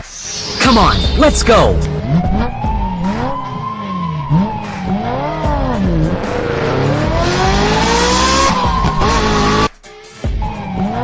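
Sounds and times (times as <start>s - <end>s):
car engine revving: 0.9s - 9.7s.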